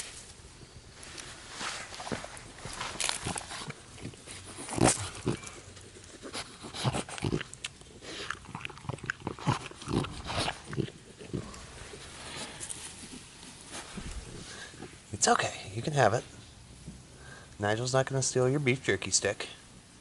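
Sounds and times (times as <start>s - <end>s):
dog chewing crunchy food: 0.4s - 15.0s.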